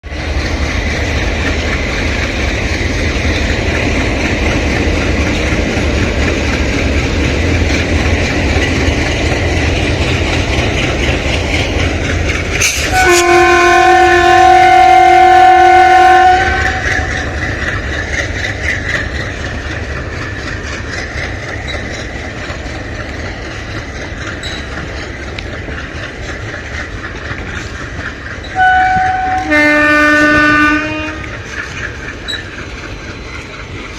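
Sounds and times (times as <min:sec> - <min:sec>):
diesel locomotive chugging: 0:00.0 - 0:33.9
locomotive horn blast: 0:12.8 - 0:17.1, 0:28.6 - 0:31.3.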